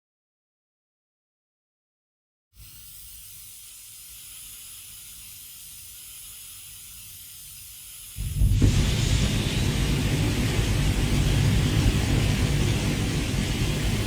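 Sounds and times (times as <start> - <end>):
high hiss of pressurised gas: 2.6 - 14.0
fire blast with deep rumble: 8.2 - 14.0.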